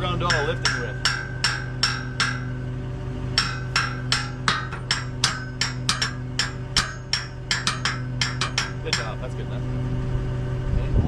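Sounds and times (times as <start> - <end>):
hammer tapping metal pin: 0.3 - 2.6, 3.4 - 9.2.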